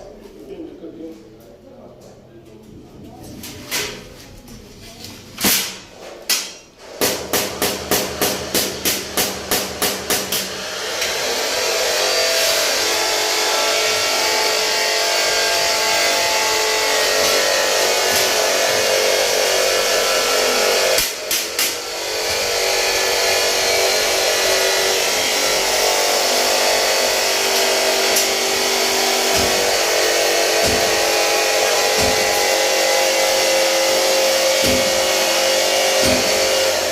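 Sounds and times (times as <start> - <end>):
hammer striking sheet metal: 5.4 - 36.9
steady machine noise: 7.9 - 36.9.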